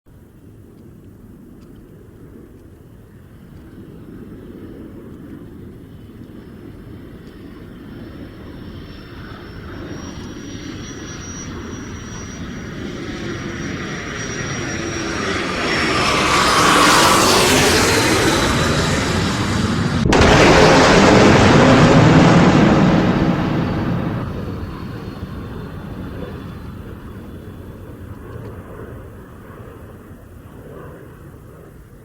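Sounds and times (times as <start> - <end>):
jet whine sliding down in pitch: 8.1 - 27.8
fighter jet roar: 8.6 - 28.0.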